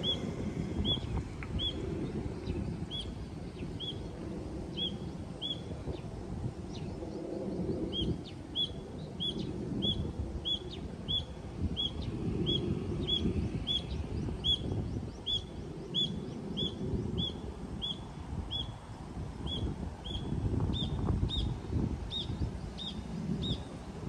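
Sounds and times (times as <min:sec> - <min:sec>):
bird chirping: 0:00.0 - 0:04.1, 0:04.7 - 0:05.6, 0:06.7 - 0:18.8, 0:22.1 - 0:23.7
low uneven rumble: 0:00.0 - 0:24.0.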